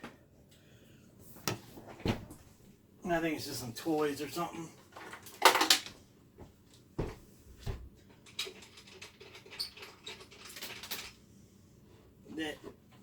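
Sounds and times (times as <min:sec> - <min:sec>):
loose objects rattling inside: 0:03.9 - 0:06.0, 0:07.0 - 0:11.2
dull knocks on speaker cabinet: 0:07.0 - 0:07.9.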